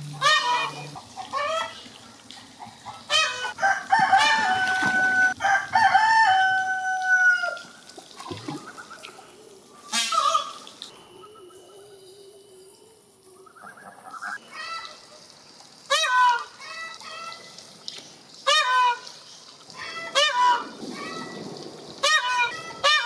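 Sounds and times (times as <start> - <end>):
peacock calling: 0.0 - 2.0, 2.6 - 5.4, 8.4 - 15.2, 15.9 - 17.6, 18.4 - 21.4, 22.0 - 23.0.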